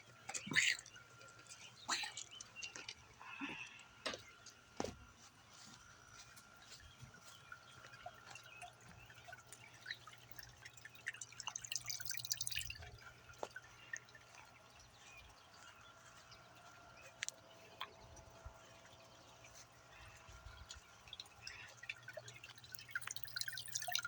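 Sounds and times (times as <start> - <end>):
fountain water dripping and splashing: 6.4 - 24.0.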